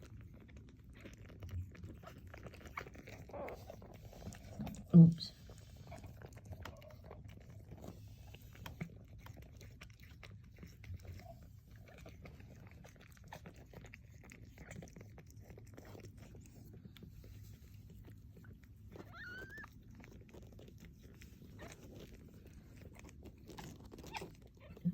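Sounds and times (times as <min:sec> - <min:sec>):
cat licking and chewing: 0:00.0 - 0:24.9
kitten squeaking: 0:18.9 - 0:19.8.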